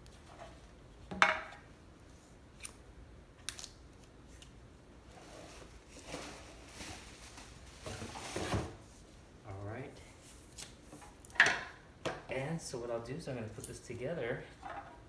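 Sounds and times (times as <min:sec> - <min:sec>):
packaging rustling and crinkling: 0:05.2 - 0:08.8.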